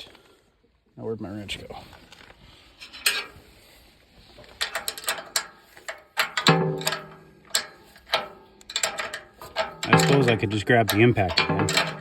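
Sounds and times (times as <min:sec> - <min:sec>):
metal hand tools clanking: 0:04.6 - 0:12.0.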